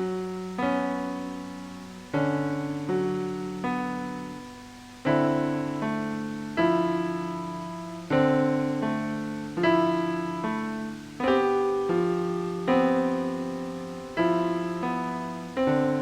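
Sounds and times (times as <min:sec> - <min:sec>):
slow ambient piano chords: 0:00.0 - 0:16.0.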